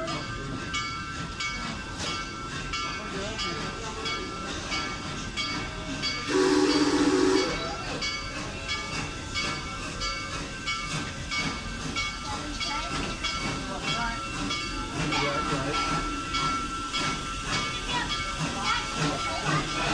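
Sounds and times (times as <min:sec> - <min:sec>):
locomotive bell ringing: 0:00.0 - 0:19.9
locomotive whistle blast: 0:06.3 - 0:07.8.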